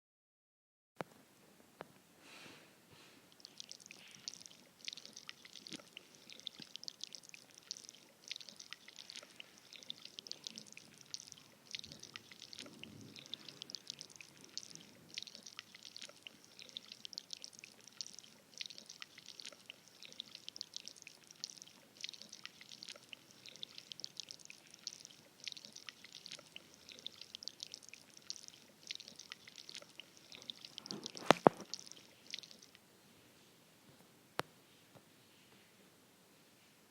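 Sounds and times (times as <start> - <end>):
candy pouring patter of ticks: 3.4 - 32.8.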